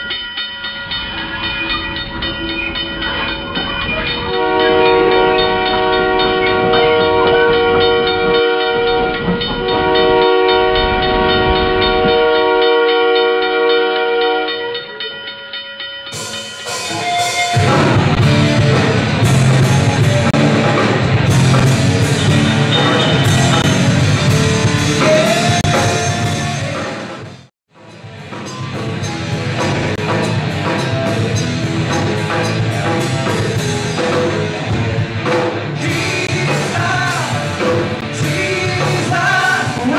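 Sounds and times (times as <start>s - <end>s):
multi-tone train horn: 4.3s - 14.9s, 16.9s - 18.0s, 22.4s - 26.8s
live rock band with drums: 16.1s - 39.9s.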